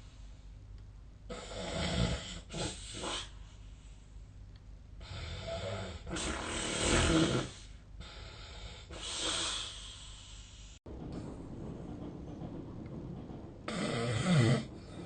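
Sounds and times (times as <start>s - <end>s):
person snoring: 5.0s - 9.8s.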